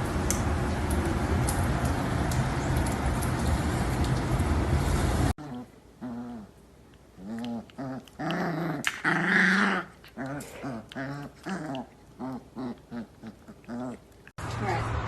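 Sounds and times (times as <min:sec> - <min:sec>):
dog growling: 0:05.4 - 0:06.6, 0:07.2 - 0:14.1.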